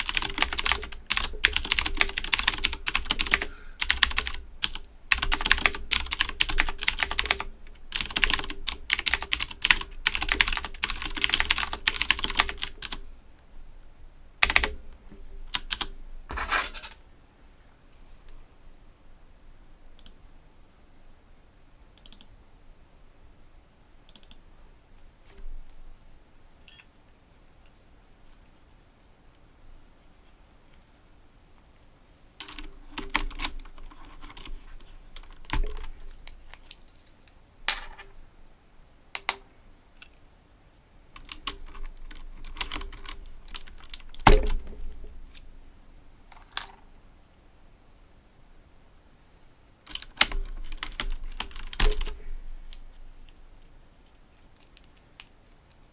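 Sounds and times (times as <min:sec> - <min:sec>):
mechanical keyboard clicks: 0:00.0 - 0:13.0, 0:24.1 - 0:24.4, 0:32.4 - 0:34.6, 0:41.2 - 0:45.4, 0:49.9 - 0:52.8.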